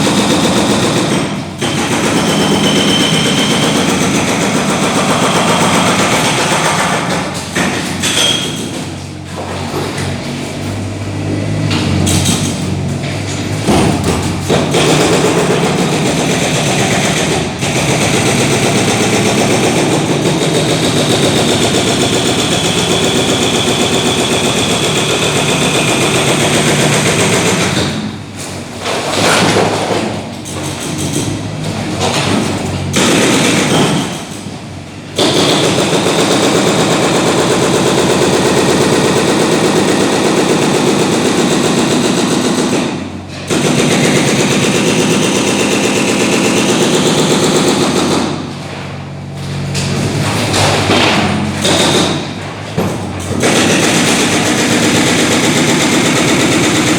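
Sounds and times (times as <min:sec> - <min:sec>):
breaker hammering concrete: 0:13.5 - 0:28.2.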